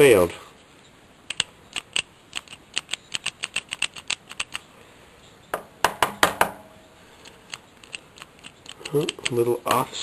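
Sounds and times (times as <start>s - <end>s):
plastic switch parts clicking: 1.3s - 4.6s, 7.2s - 9.4s.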